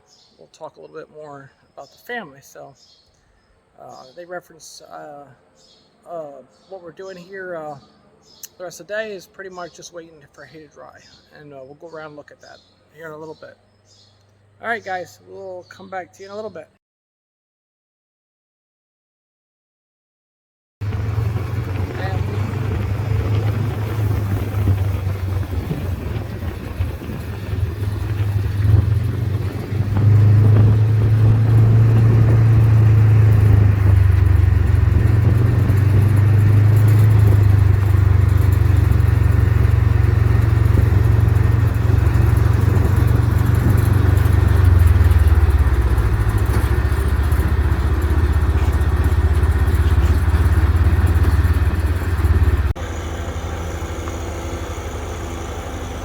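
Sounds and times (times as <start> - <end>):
engine rumbling: 20.8 - 56.0.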